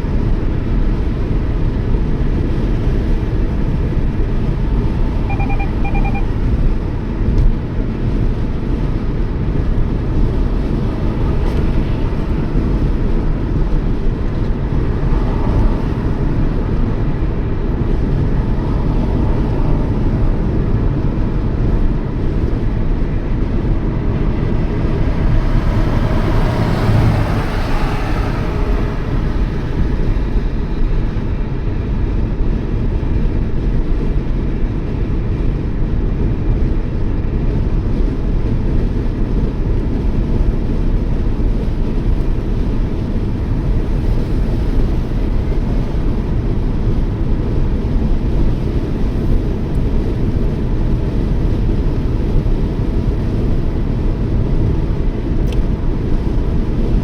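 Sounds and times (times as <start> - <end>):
road and engine rumble inside car: 0.0 - 57.0
faint double beep: 5.2 - 6.4.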